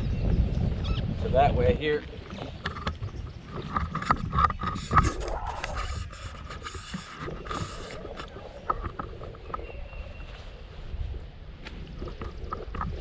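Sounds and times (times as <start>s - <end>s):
fishing reel clicks and scrapes: 3.9s - 8.3s
hissy rushes: 4.9s - 8.2s.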